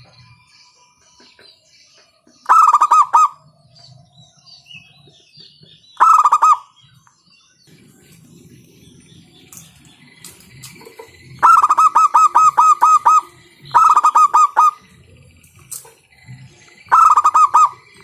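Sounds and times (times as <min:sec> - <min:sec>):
dove cooing: 0:02.5 - 0:03.4, 0:06.0 - 0:06.6, 0:10.7 - 0:15.0, 0:16.9 - 0:18.0.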